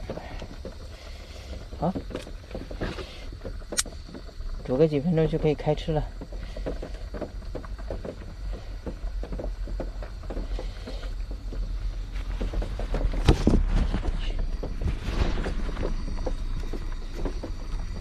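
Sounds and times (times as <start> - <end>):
noodles bubbling in a pot: 0.0 - 13.5.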